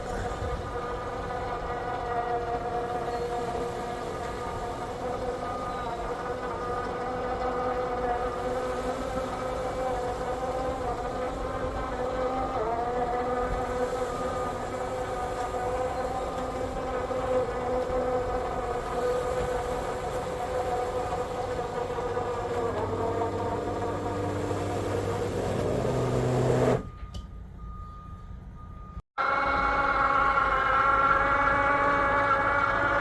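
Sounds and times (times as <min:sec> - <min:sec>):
boat diesel engines droning: 0:00.0 - 0:33.0.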